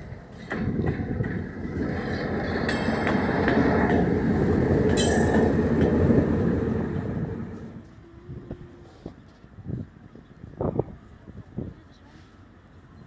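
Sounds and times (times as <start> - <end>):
wheels clicking over rail joints: 0.0 - 7.8
train rumbling on track: 0.0 - 8.6.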